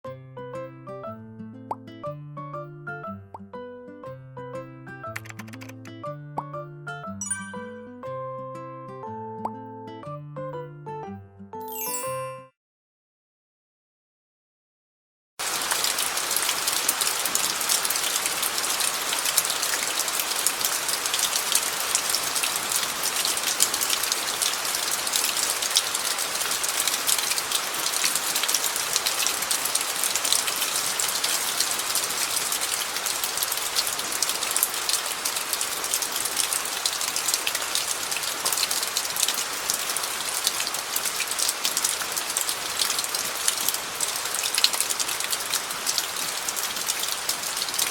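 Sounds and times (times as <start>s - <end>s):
rain falling on gravel: 15.4s - 47.9s.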